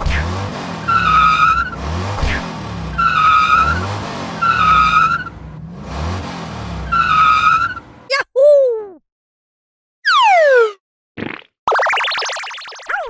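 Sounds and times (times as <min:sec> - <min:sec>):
tyres squealing: 0:00.8 - 0:01.9, 0:02.9 - 0:05.4, 0:06.8 - 0:07.9.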